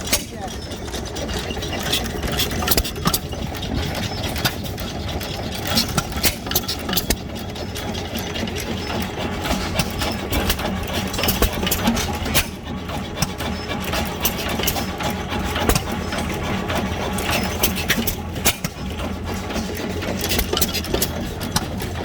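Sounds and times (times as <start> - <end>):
sharp engine clicks and knocks: 0.0 - 22.0
stationary engines chugging: 0.0 - 22.0.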